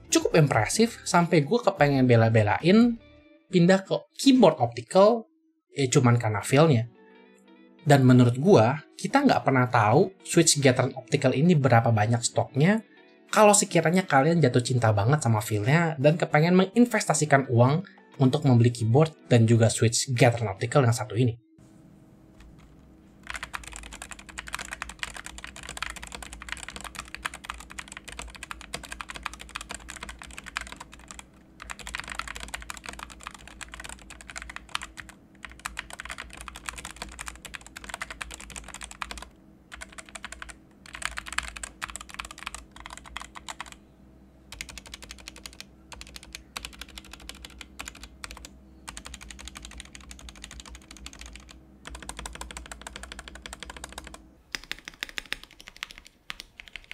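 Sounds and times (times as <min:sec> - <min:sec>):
mechanical keyboard typing: 0:23.2 - 0:43.8, 0:44.5 - 0:56.9.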